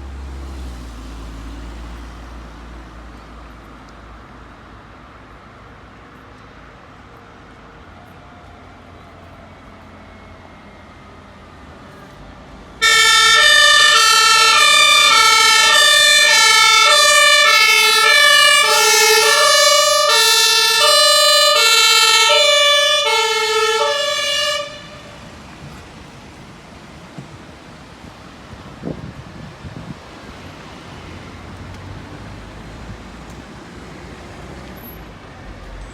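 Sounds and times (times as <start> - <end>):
faint traffic rumble: 0.0 - 35.9
two-tone emergency siren: 12.8 - 25.4.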